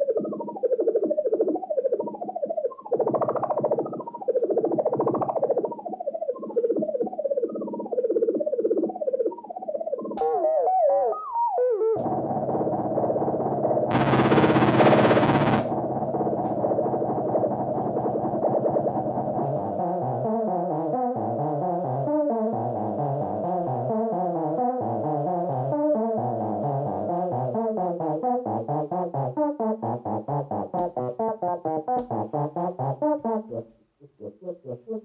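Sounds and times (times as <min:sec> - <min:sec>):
synthesizer buzzing tone: 0:13.9 - 0:15.7
synthesizer sequenced pattern: 0:13.9 - 0:15.7.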